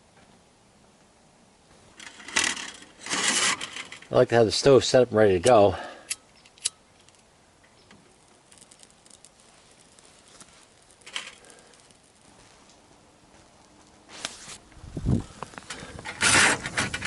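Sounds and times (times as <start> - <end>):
rustling and handling clicks: 2.0 - 4.1, 5.4 - 12.8
short scraping: 2.0 - 4.1, 14.1 - 17.0.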